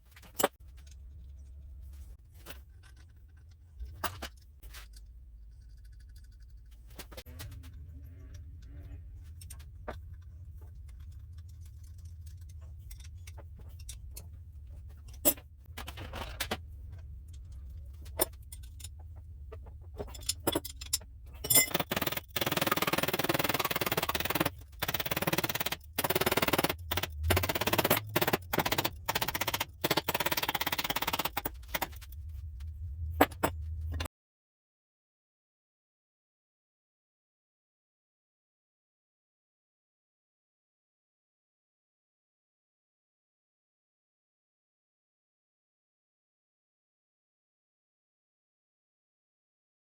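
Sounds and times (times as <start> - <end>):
low hum: 0.6 - 34.1
clicks and knocks: 23.6 - 34.1.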